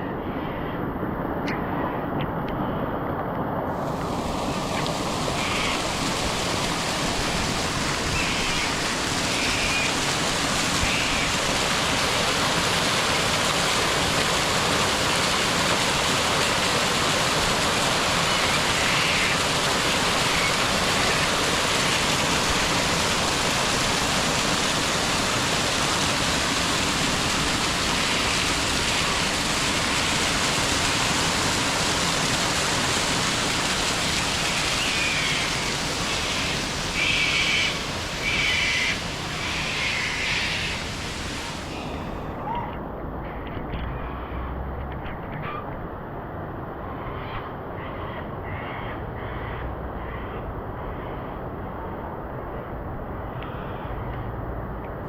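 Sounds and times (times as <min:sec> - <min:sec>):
steady rain hiss: 0:00.0 - 0:42.6.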